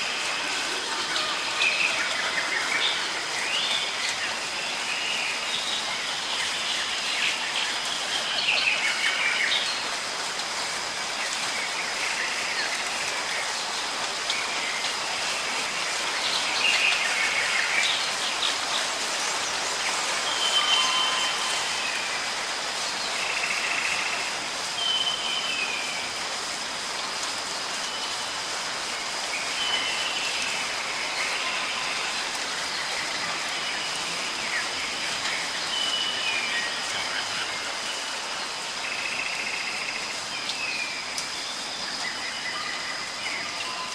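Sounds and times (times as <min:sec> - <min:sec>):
steady rain falling: 0:00.0 - 0:43.9
birds chirping and whistling: 0:20.2 - 0:22.3.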